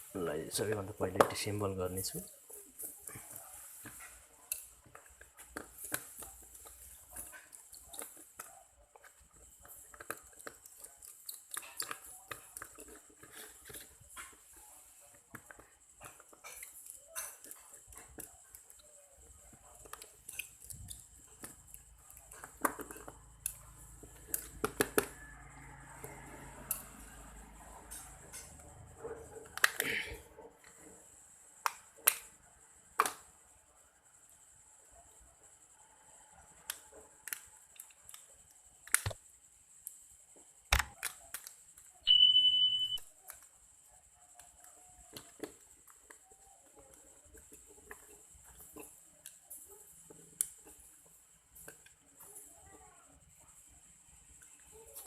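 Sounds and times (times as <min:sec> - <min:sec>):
multimeter continuity beep: 0:42.0 - 0:43.1.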